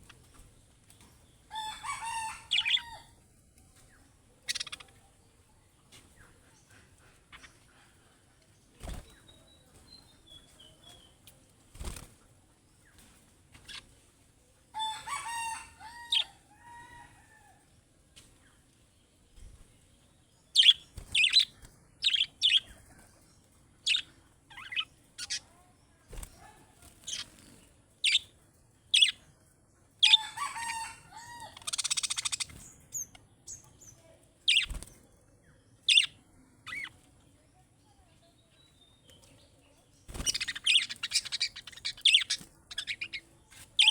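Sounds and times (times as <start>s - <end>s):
budgerigar chirps: 4.5s - 4.9s, 40.2s - 43.2s
wings fluttering: 8.7s - 9.9s, 11.6s - 14.0s, 20.6s - 23.3s, 23.9s - 28.2s, 31.5s - 33.2s, 34.5s - 35.1s, 40.0s - 43.9s.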